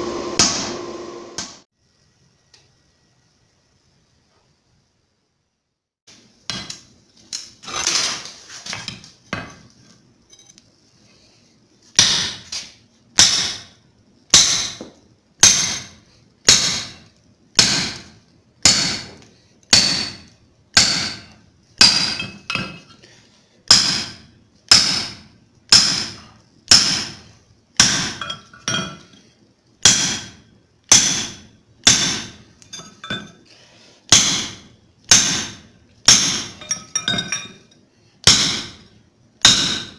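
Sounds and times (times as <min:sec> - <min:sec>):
hammer striking steel on anvil: 0:00.0 - 0:01.6, 0:13.2 - 0:22.8, 0:23.7 - 0:27.2, 0:27.8 - 0:29.0, 0:29.8 - 0:33.3, 0:34.1 - 0:37.6, 0:38.2 - 0:39.9.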